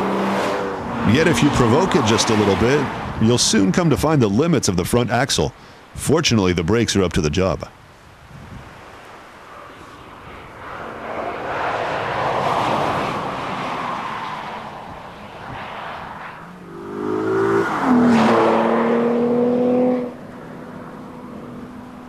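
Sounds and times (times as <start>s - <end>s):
road and wind rush: 0.0s - 22.0s
car engine revving high: 16.4s - 20.9s.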